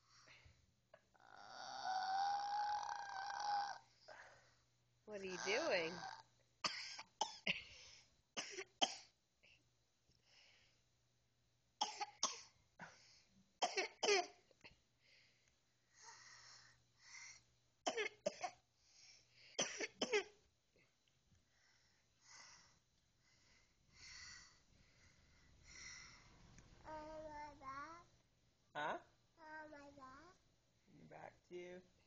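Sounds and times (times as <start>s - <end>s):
child coughing: 5.4s - 7.6s, 8.4s - 9.1s, 11.8s - 12.5s, 13.6s - 14.4s, 19.6s - 20.3s
wheezy breaths: 15.0s - 17.5s, 18.8s - 19.6s, 21.4s - 26.5s.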